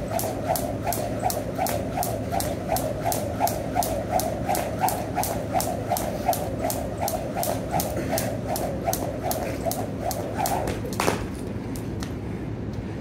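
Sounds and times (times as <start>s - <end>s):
jump rope slapping floor: 0.0s - 12.1s.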